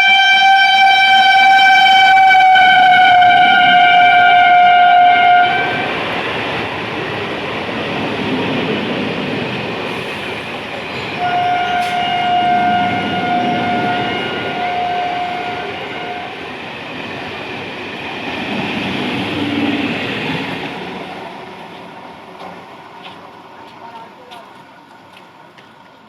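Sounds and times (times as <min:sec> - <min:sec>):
train horn blast: 0:00.0 - 0:06.0, 0:11.2 - 0:16.6
train running past: 0:00.0 - 0:26.0.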